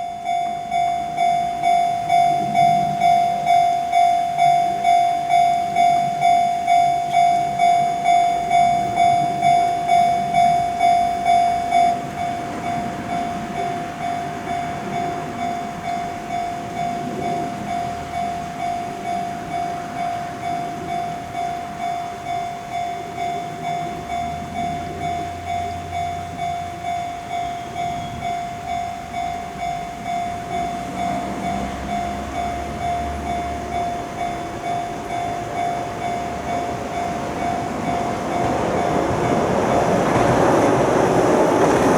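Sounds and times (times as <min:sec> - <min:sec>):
level-crossing bell ringing: 0:00.0 - 0:41.9
train rumbling past: 0:00.0 - 0:41.9.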